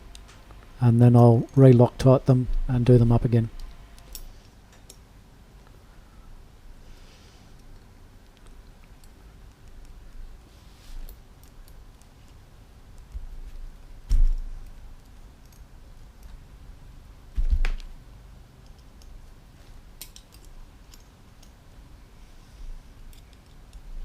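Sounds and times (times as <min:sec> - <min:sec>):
dull thumps: 0:17.4 - 0:17.9
metal parts clicking and tapping: 0:18.6 - 0:19.2, 0:19.9 - 0:21.6, 0:23.0 - 0:24.0.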